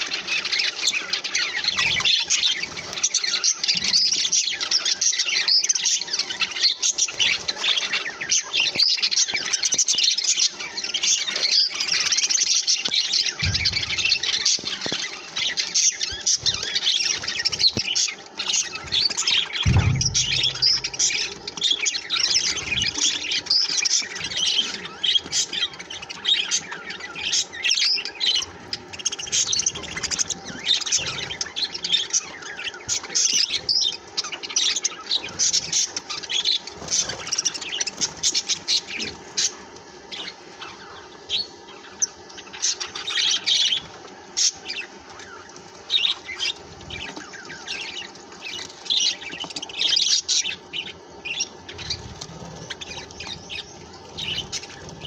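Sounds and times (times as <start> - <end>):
budgerigars chirping and squawking: 0.0 - 55.0
dull low thumps: 13.4 - 14.4, 19.6 - 21.4.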